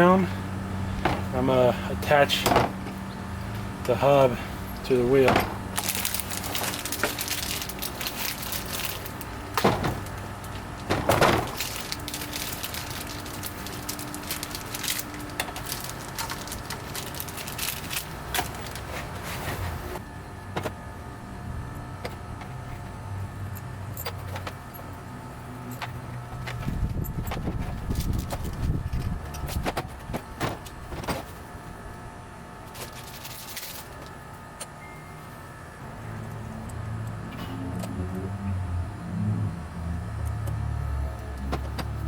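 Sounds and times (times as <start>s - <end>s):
steady low hum: 0.0s - 42.0s
metal clinks and knocks: 4.7s - 18.9s.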